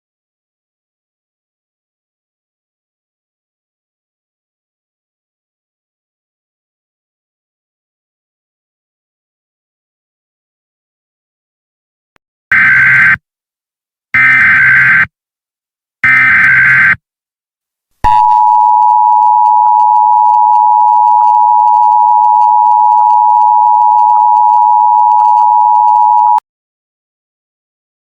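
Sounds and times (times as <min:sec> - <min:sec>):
two-tone attention signal: 0:18.1 - 0:26.4.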